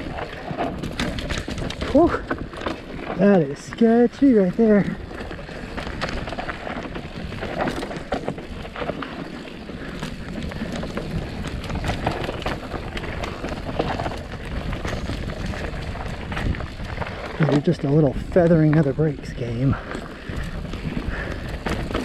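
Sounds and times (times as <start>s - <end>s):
bike knocks and rattles: 0.0s - 22.0s
tyres crunching over rock: 0.0s - 22.0s
wind on microphone: 9.8s - 17.4s.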